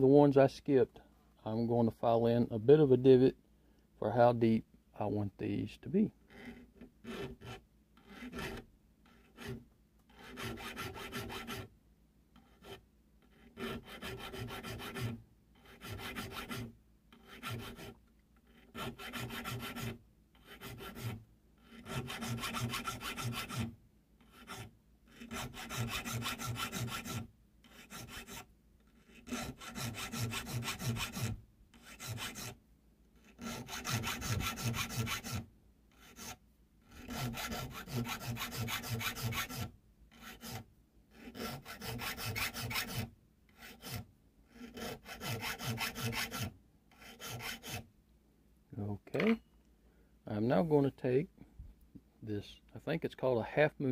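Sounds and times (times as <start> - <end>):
file rasping on metal: 6.2 - 11.7, 12.4 - 32.6, 33.2 - 47.8.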